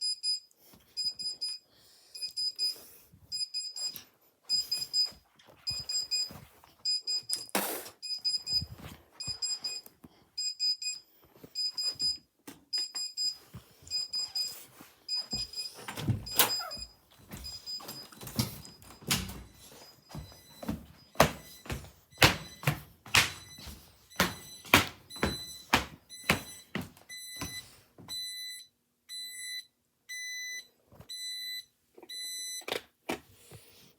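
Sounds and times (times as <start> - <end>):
electronic alarm beeping: 2.2 - 11.0, 11.6 - 32.7
sharp knocks and thuds: 20.2 - 27.6.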